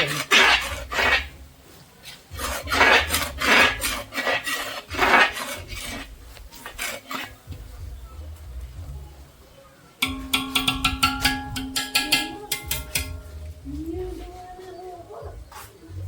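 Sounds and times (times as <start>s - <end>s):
spoon scraping a cooking pot: 0.0s - 1.4s, 2.0s - 7.6s, 10.0s - 13.2s.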